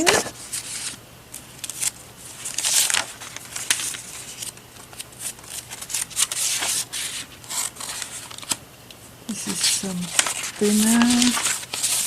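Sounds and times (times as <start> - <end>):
paper rustling and sliding: 0.0 - 1.0, 1.6 - 8.6, 9.3 - 12.0.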